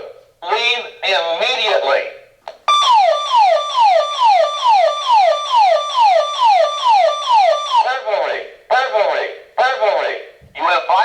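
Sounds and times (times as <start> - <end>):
burglar alarm siren: 2.7 - 8.0.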